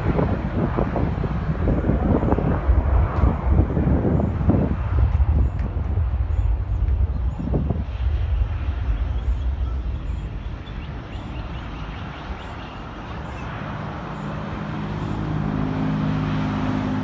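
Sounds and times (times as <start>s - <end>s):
jet engine roar: 0.0s - 17.0s
wind rumble on microphone: 0.0s - 17.0s.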